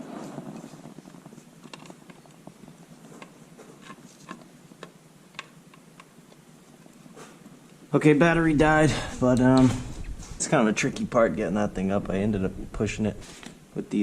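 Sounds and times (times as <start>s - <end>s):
low rustling: 7.0s - 13.8s.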